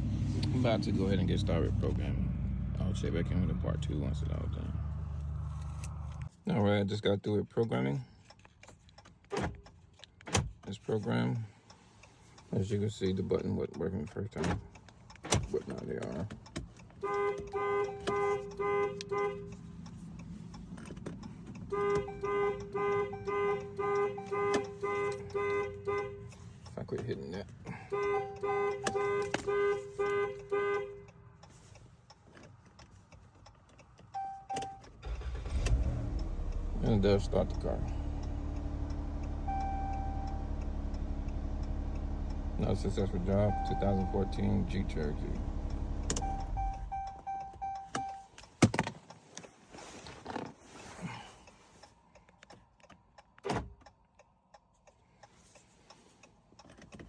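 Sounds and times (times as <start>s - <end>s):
car engine starting: 0.0s - 6.8s, 7.7s - 53.9s
car horn honking in pulses: 17.0s - 19.5s, 21.7s - 26.3s, 27.7s - 31.1s, 39.4s - 40.3s
car chime beeping: 17.0s - 20.6s, 21.6s - 26.4s, 27.8s - 31.2s, 34.1s - 35.6s, 37.6s - 48.3s
short beeps: 34.2s - 34.8s, 39.4s - 40.5s, 43.5s - 44.4s, 46.2s - 48.3s
small clicks and rustling: 48.0s - 57.0s.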